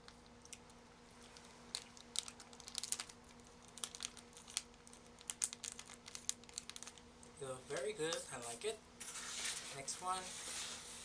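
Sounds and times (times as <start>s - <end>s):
plastic packaging crinkling: 1.3s - 7.1s.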